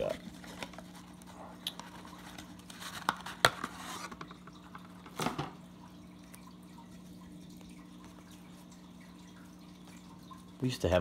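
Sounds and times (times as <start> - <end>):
cards rustling: 0.0 - 4.3
faint steady hum: 0.0 - 11.0.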